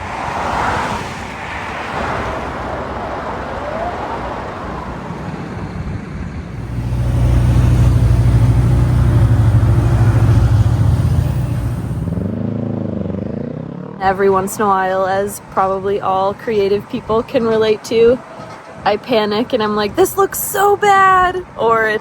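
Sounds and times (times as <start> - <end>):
vehicles passing on street: 0.0 - 22.0
heavy engine low hum: 3.1 - 20.2.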